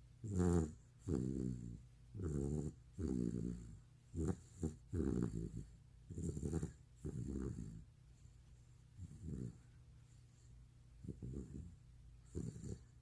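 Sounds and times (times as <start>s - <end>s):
dog snoring: 0.2s - 7.9s, 9.0s - 9.7s, 11.0s - 13.0s.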